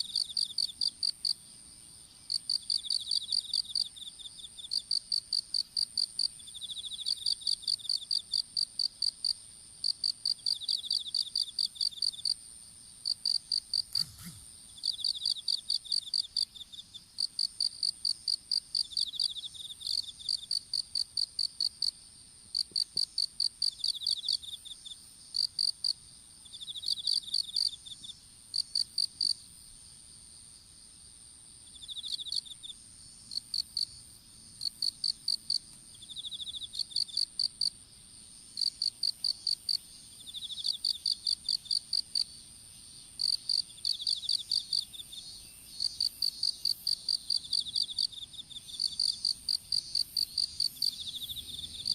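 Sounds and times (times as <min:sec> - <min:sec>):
crickets chirping: 0:00.0 - 0:51.9
insect buzzy trills: 0:13.0 - 0:29.6, 0:38.4 - 0:51.9.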